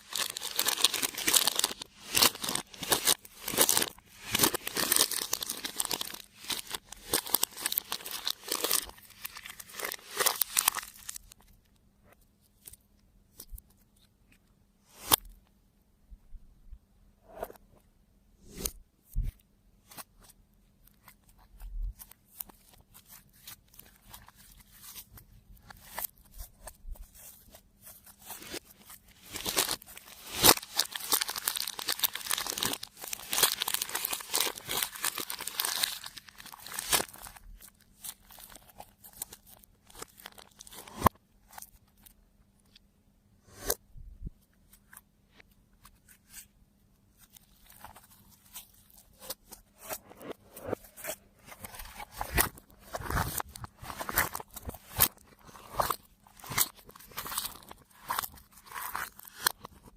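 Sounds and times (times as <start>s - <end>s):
slime crackling and crunching: 0.0s - 11.4s, 28.2s - 41.1s.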